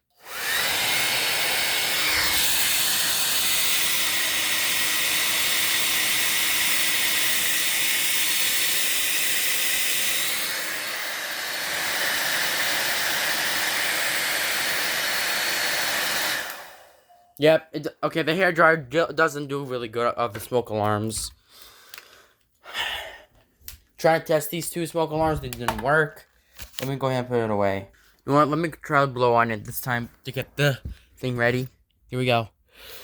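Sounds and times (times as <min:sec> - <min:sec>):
hair dryer blowing: 0:00.2 - 0:17.1.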